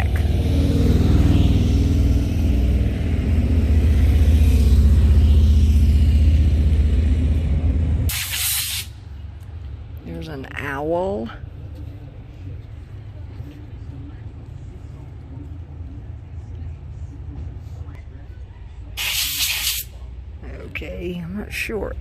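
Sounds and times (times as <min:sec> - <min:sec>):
vehicle engine pulsing rumble: 0:00.0 - 0:22.0
short burst of hiss: 0:08.1 - 0:09.0, 0:19.0 - 0:19.9.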